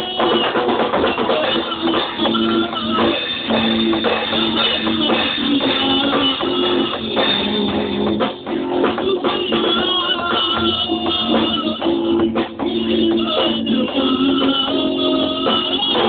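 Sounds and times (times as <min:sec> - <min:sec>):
bass guitar: 0:00.0 - 0:16.0
drum kit: 0:00.0 - 0:16.0
electric guitar: 0:00.0 - 0:16.0.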